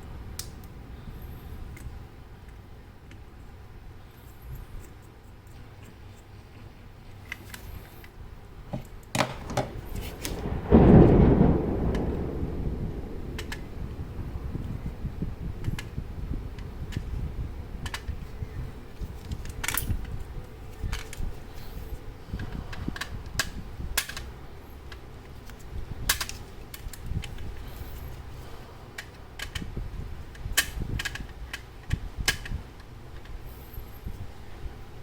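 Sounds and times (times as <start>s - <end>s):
steady low rumble: 0.0s - 9.1s, 9.7s - 35.0s
small metal parts clicking: 19.2s - 21.3s.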